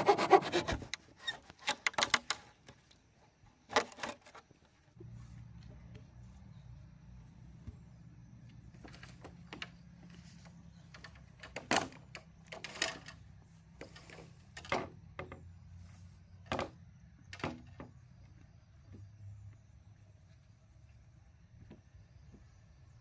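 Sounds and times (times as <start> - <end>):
low steady hum: 4.7 - 23.0.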